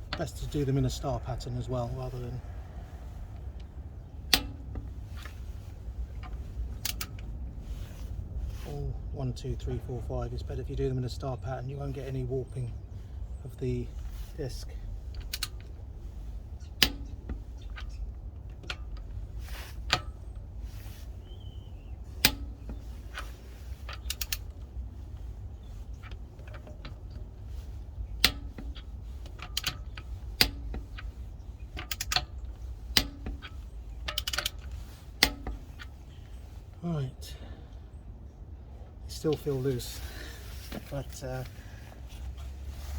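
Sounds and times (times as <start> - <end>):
torque wrench ratchet clicks: 34.1 - 34.6.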